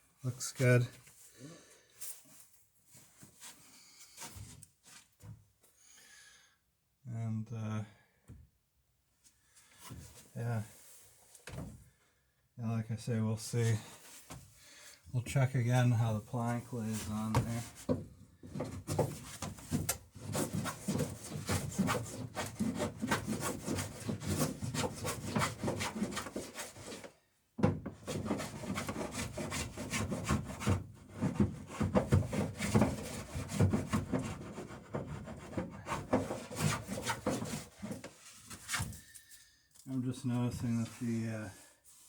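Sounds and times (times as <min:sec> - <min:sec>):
block plane shaving wood: 0:20.2 - 0:27.0, 0:28.0 - 0:38.0.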